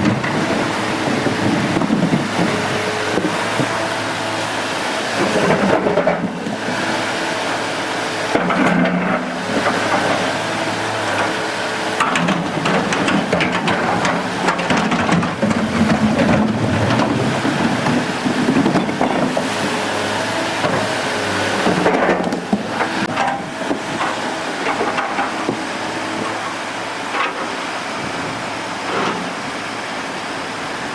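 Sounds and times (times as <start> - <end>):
diesel engine running: 0.0 - 30.9
flowing water: 0.0 - 30.9
knocks and clatter: 12.0 - 19.5, 21.6 - 28.2.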